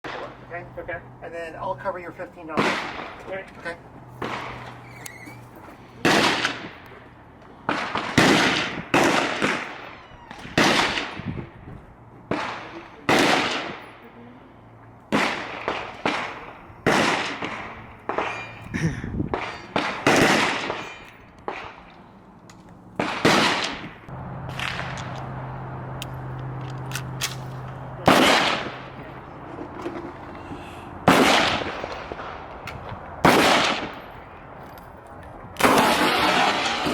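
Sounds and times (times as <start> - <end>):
gunshots with ringing tail: 15.1 - 18.6, 19.3 - 21.9, 23.0 - 23.9, 28.0 - 28.9, 31.0 - 32.5, 33.2 - 34.2.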